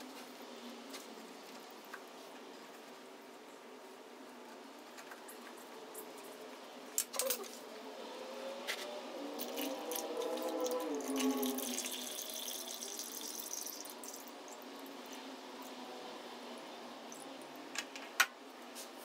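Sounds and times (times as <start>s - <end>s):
oil pouring and splashing: 9.4s - 15.0s.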